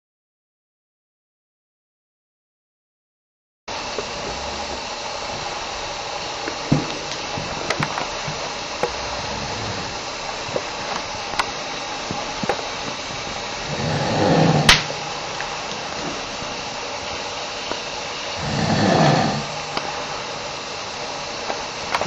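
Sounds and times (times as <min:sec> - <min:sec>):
steady hiss: 0:03.7 - 0:22.0
man snoring: 0:08.8 - 0:10.1, 0:13.6 - 0:14.8, 0:18.4 - 0:19.6.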